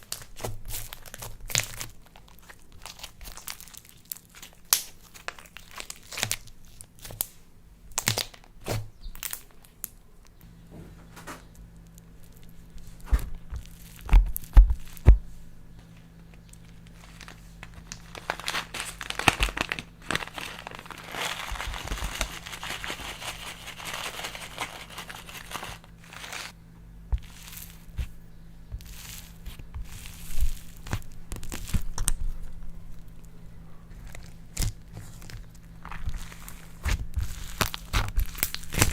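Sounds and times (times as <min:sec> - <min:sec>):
sticky slime crackling and popping: 0:00.0 - 0:10.1, 0:11.8 - 0:15.2, 0:16.2 - 0:38.9.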